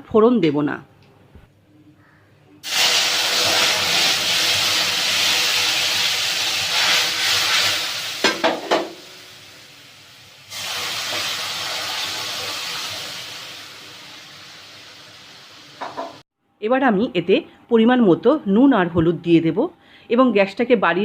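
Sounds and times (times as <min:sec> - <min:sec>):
hot oil sizzling loudly: 0:02.6 - 0:16.2.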